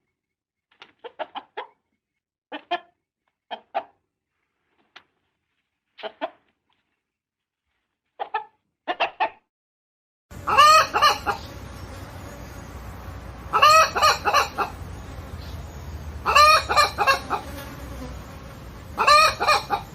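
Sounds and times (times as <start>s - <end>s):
hen clucking and cackling: 1.0s - 1.8s, 2.5s - 4.0s, 8.2s - 9.5s, 10.3s - 19.9s
steady background hum: 10.3s - 19.9s.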